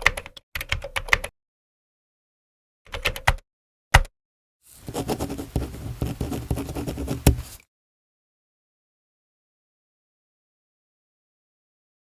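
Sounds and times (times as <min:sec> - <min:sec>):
pen scratching on paper: 0:04.8 - 0:07.6.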